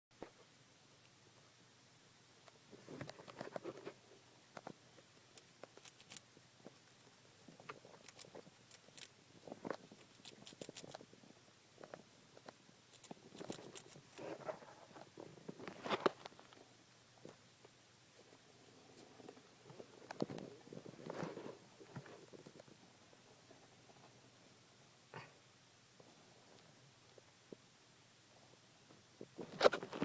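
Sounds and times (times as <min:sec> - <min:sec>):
hamster clicks and scratches: 0:02.8 - 0:11.2, 0:11.8 - 0:16.5.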